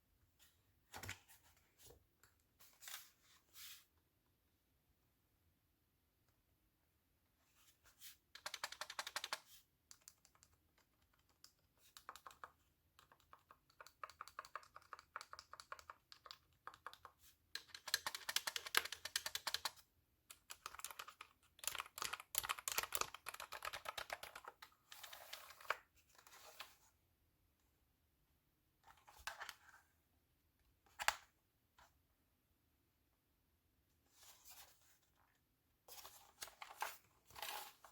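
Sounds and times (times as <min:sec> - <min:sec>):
keyboard keys typing: 0:08.4 - 0:24.6.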